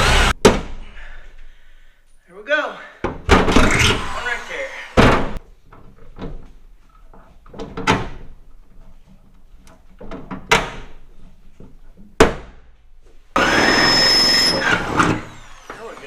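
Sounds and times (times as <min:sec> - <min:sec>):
drill whining: 0:00.0 - 0:00.3, 0:03.6 - 0:05.0, 0:13.4 - 0:16.0.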